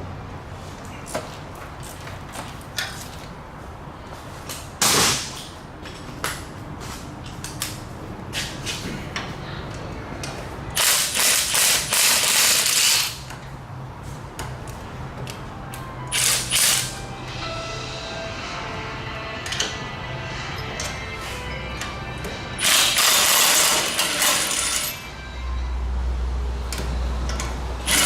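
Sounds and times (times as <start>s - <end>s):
power tool running: 22.6s - 25.0s
metal tools clinking: 22.6s - 25.1s.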